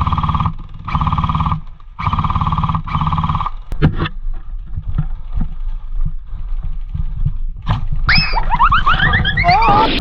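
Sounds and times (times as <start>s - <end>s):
cartoon rising whistle chirps: 8.1s - 10.0s.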